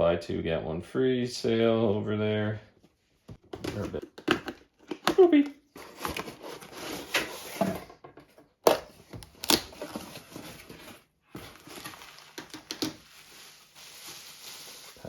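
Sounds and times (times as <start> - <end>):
cardboard and plastic packaging rustling: 3.4 - 8.0, 8.8 - 15.0.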